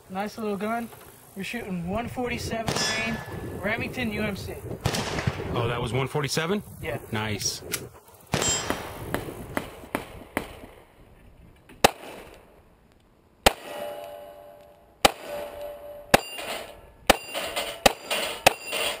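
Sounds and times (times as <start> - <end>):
pistol shots: 2.7 - 3.5, 4.8 - 5.5, 8.3 - 10.8, 11.8 - 12.5, 13.4 - 18.8
metallic ringing: 2.7 - 3.9, 8.4 - 8.9, 13.6 - 19.0.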